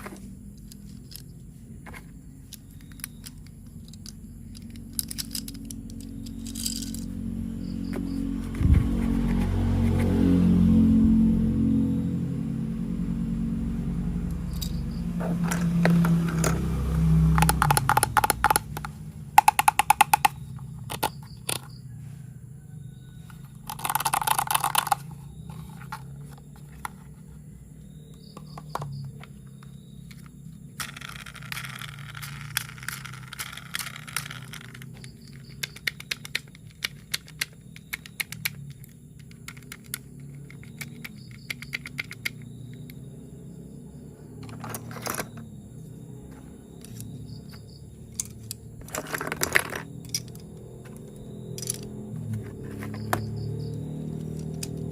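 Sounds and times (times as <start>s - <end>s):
plastic parts clattering: 0.0s - 7.2s, 14.5s - 16.7s, 17.3s - 21.7s, 23.3s - 27.2s, 30.0s - 42.4s, 44.4s - 45.4s, 48.1s - 53.4s, 54.2s - 54.9s
plastic parts clicking and rattling: 0.0s - 7.2s, 14.5s - 21.7s, 23.3s - 27.1s, 28.3s - 42.9s, 44.4s - 45.4s, 46.8s - 54.9s
plastic scrape: 48.2s - 51.0s, 51.6s - 53.3s.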